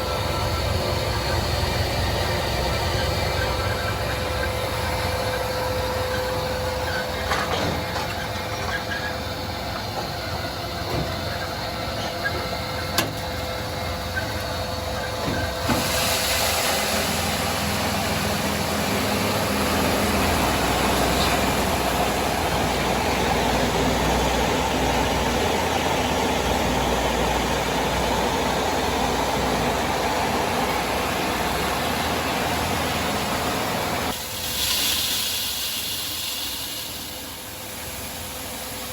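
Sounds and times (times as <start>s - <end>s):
loud hiss: 15.5s - 23.6s, 33.4s - 38.9s.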